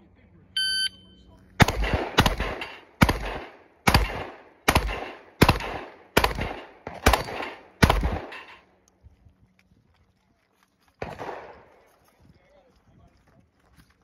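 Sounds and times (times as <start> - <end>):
shotgun shots with echo: 1.6 - 8.6, 11.0 - 11.8.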